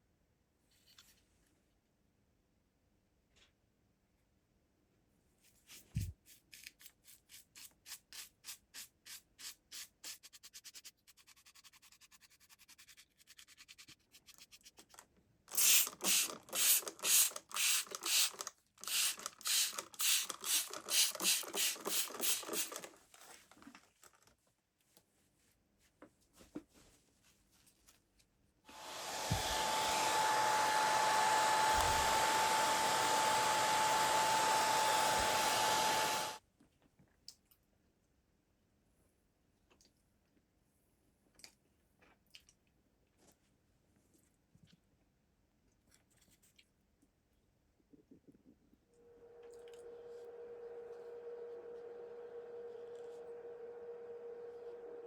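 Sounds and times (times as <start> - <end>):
hair dryer blowing with whine: 28.7 - 36.4, 49.2 - 55.0.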